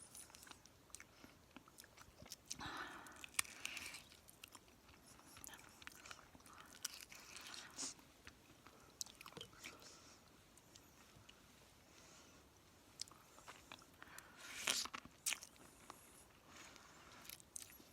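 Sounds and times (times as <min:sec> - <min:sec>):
breath: 0:02.6 - 0:03.7.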